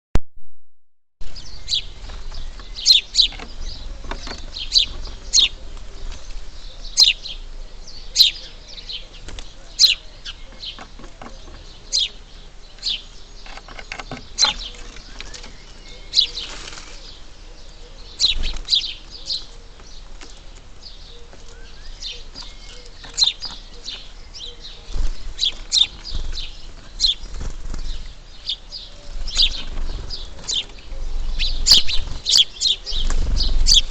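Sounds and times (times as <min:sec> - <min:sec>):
small birds chirping: 0:01.2 - 0:33.9
wing flutter: 0:29.0 - 0:33.9.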